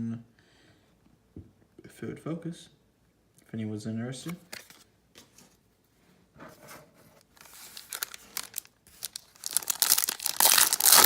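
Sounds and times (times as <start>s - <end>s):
plastic wrapper crinkling and tearing: 7.3s - 11.0s.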